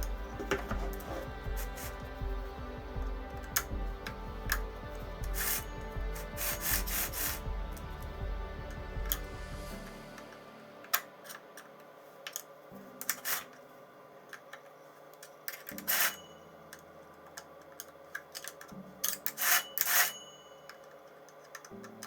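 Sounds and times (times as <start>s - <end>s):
hard parts rubbing and scraping: 0.0s - 13.6s.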